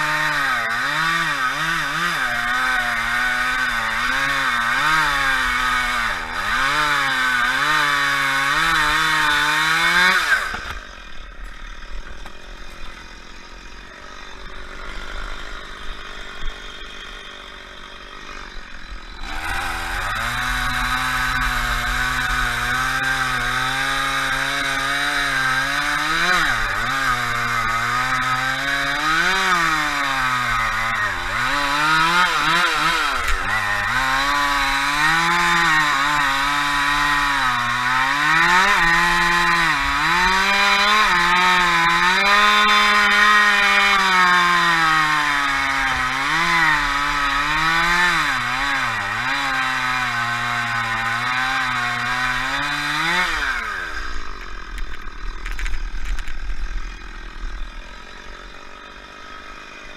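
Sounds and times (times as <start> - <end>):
chainsaw cutting: 0.0 - 59.9.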